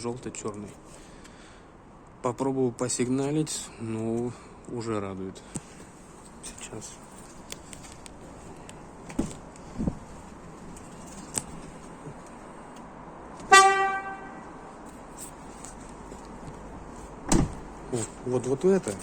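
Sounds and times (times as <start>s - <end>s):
car horn honk: 13.5s - 14.5s.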